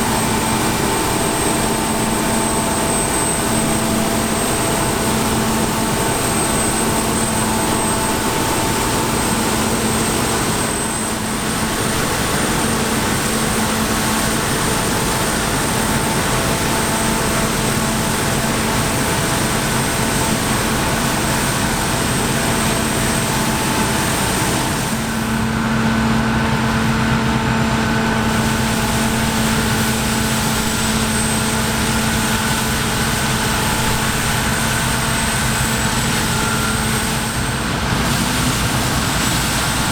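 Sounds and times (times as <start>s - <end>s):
heavy machinery engine drone: 0.0s - 39.9s
high steady whine: 0.0s - 39.9s
mid-pitched whine: 0.0s - 39.9s.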